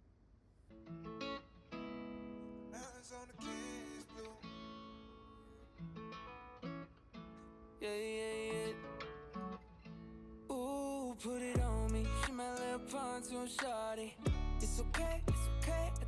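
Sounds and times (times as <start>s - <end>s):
acoustic guitar strumming chords: 7.8s - 16.0s.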